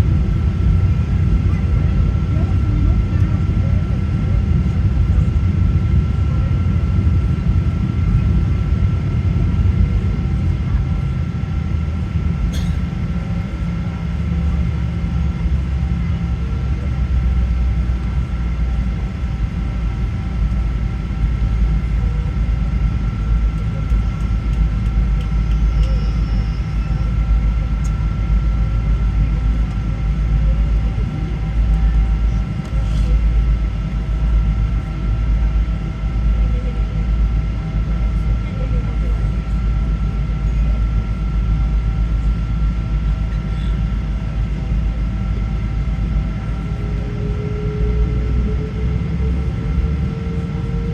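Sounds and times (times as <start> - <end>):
heavy low rumble: 0.0 - 50.9
jet engine hum in cabin: 0.0 - 50.9.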